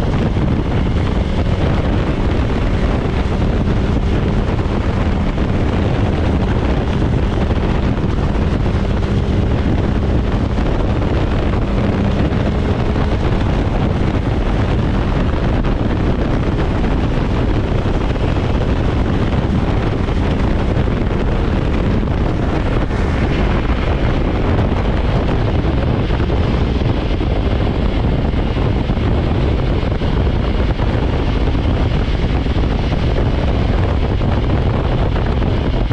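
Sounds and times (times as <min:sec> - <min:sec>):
motorcycle engine running: 0:00.0 - 0:35.9
wind rushing over microphone: 0:00.0 - 0:35.9.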